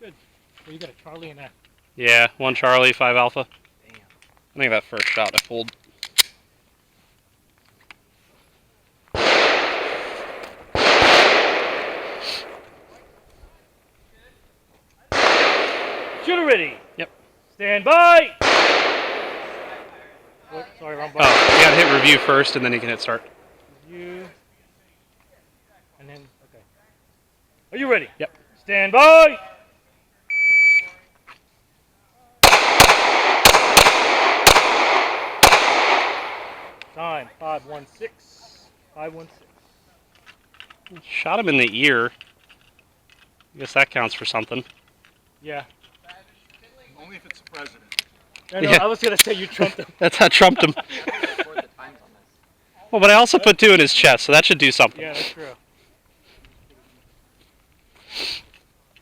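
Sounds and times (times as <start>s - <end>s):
gunshots with echo: 9.2s - 12.9s, 15.1s - 16.8s, 18.4s - 20.1s, 21.2s - 23.3s, 32.4s - 36.8s
shot timer start beep: 30.3s - 31.0s.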